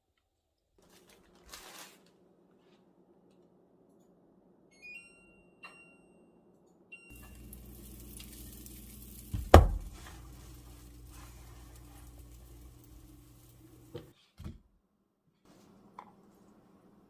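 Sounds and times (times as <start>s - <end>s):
heavy double clunk: 9.4s - 10.1s.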